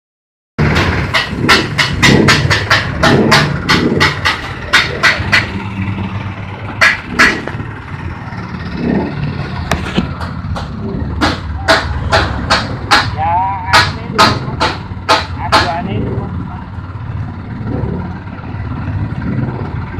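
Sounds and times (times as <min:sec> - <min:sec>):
sharp clacks: 0:00.6 - 0:07.7, 0:08.8 - 0:16.2.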